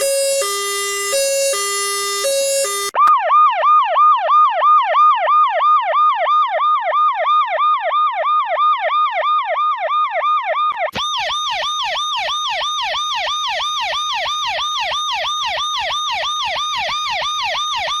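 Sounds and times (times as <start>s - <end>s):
siren yelping: 0.0s - 3.8s, 8.9s - 18.0s.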